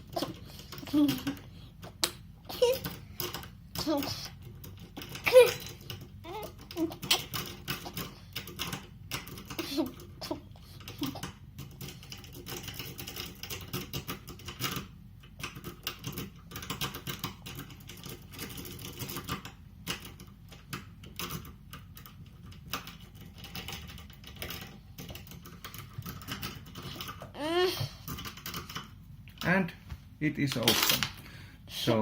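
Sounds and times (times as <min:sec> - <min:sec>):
lock pick clicking and rattling: 0:02.8 - 0:27.3.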